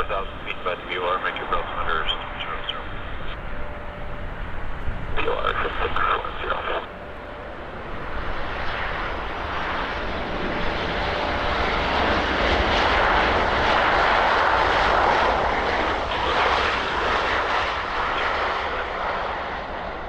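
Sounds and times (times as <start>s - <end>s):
jet engine roar: 0.0s - 20.0s.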